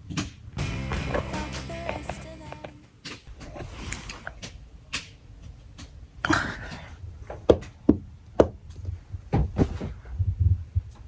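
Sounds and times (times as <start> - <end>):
sharp knocks and thuds: 7.3 - 11.0.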